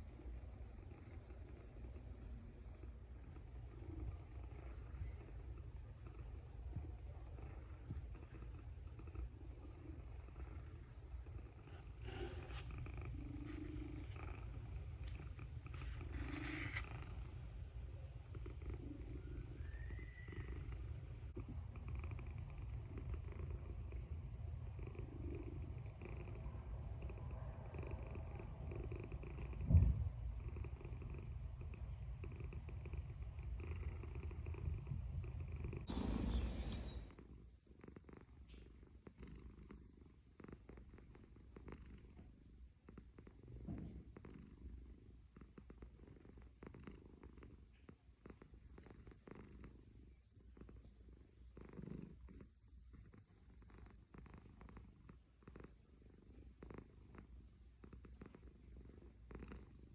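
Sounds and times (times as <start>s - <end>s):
cat snoring: 0.8s - 17.3s, 18.4s - 29.8s, 30.4s - 59.9s.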